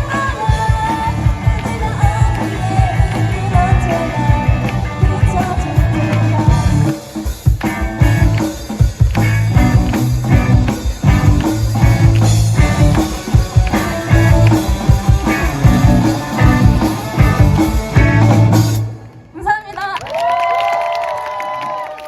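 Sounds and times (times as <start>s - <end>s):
rock band playing: 0.0s - 19.2s.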